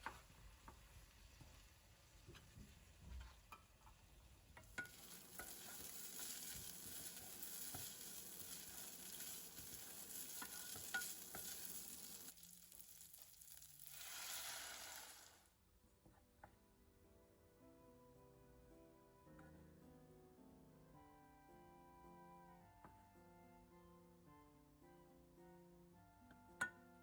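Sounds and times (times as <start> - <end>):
food sizzling in a hot pan: 0.0 - 15.5.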